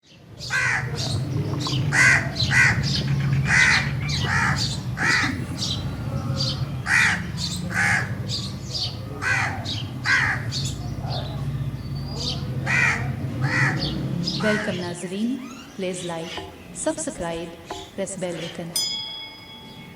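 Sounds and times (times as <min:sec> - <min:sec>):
crows cawing: 0:00.4 - 0:05.8, 0:06.4 - 0:08.4, 0:09.1 - 0:10.8, 0:12.6 - 0:16.6.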